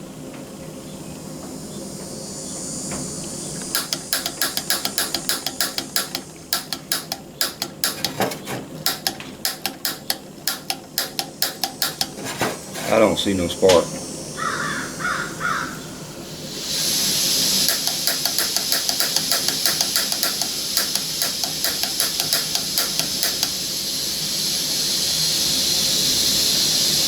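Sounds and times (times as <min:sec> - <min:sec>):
gas hissing from stove burner: 0:02.0 - 0:27.0
stove igniter clicking: 0:03.6 - 0:12.7, 0:17.4 - 0:24.1.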